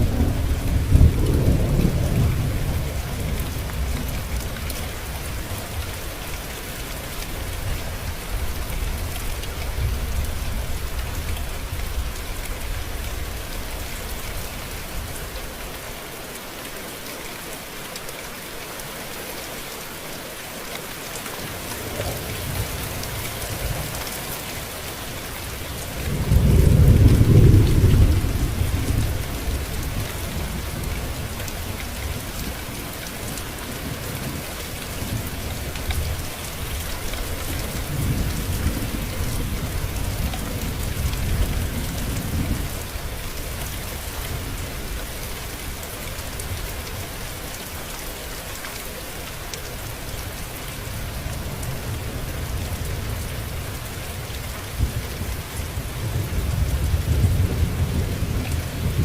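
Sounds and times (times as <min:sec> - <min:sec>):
thunder rolling: 0:00.0 - 0:03.9, 0:26.1 - 0:29.6
steady rain falling: 0:00.0 - 0:59.0.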